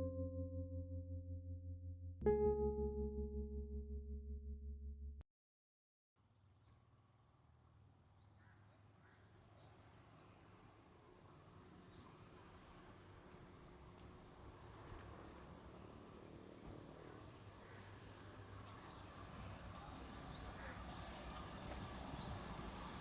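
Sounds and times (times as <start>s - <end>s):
low steady hum: 0.0s - 5.2s.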